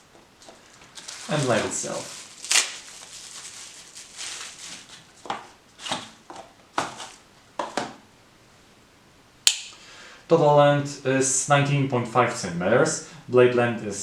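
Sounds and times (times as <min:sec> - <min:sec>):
packaging rubbing: 0:00.4 - 0:07.2.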